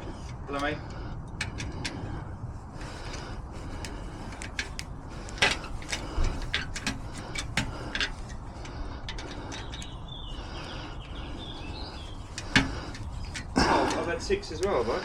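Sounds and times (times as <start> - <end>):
low background rumble: 0.0 - 15.0
small metal clicks and taps: 0.2 - 2.1, 3.8 - 10.0, 12.3 - 14.8.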